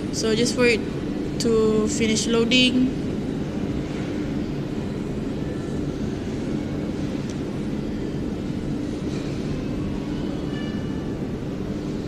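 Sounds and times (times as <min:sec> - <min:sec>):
faint constant hum: 0:00.0 - 0:12.0.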